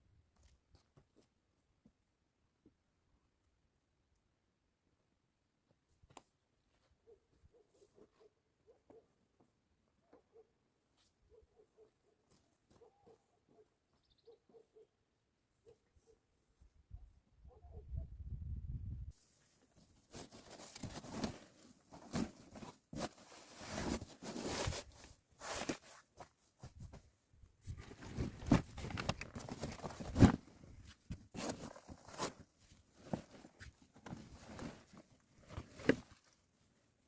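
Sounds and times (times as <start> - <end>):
hands rustling and scraping: 19.2 - 36.6.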